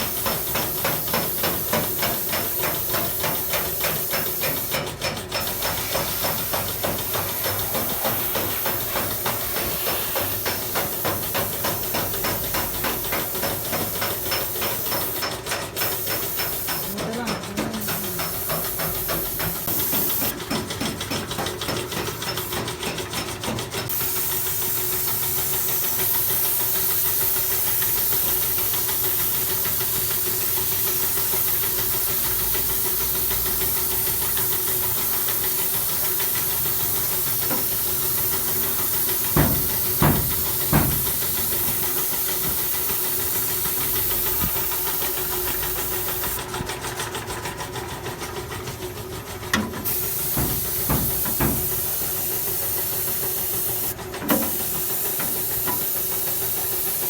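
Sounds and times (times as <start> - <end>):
loud steady hiss: 0.0 - 20.4, 23.9 - 46.4, 49.8 - 57.0
sharp knocks: 39.3 - 41.2, 50.3 - 51.8.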